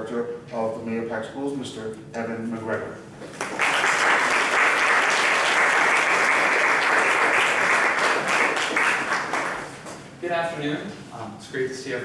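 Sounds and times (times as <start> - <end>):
audience applause: 3.3 - 9.8.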